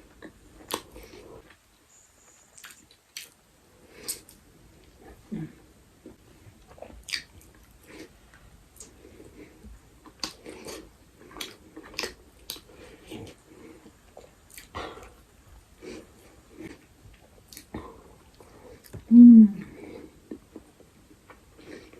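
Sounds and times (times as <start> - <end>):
person chewing food: 0.1 - 1.6, 2.5 - 3.4, 6.0 - 19.0
wet mouth smacks: 0.7 - 0.9.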